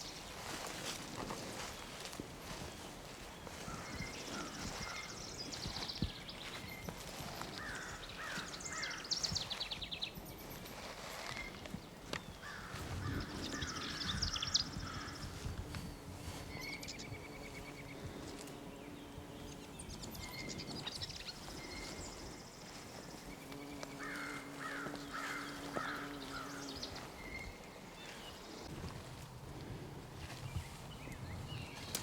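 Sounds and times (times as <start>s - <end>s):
birds singing: 0.0s - 28.7s, 30.3s - 32.0s
crow cawing: 7.6s - 9.1s, 12.4s - 14.0s, 14.8s - 15.2s, 24.0s - 26.6s.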